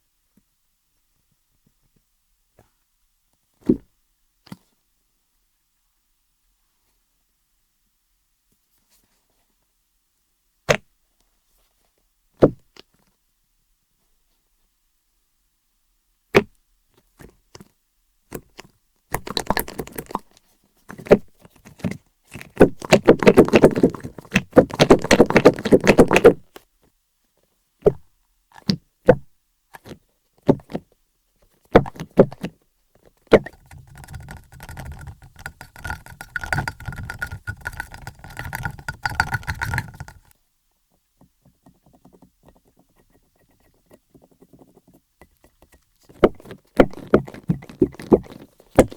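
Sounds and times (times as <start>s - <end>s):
taps and clicks on squishy toy: 18.3s - 20.2s, 33.3s - 40.3s
squishy toy squishing and crackling: 33.3s - 40.3s.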